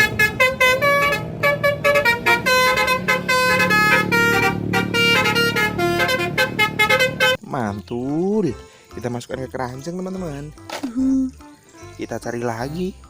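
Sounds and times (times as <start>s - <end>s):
horn-like background music: 0.0s - 7.6s.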